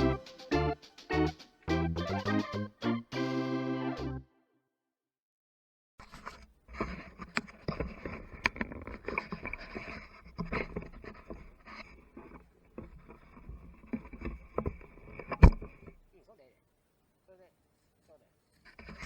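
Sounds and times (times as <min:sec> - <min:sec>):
hand tool scraping earth: 0:06.0 - 0:16.0, 0:18.6 - 0:19.0.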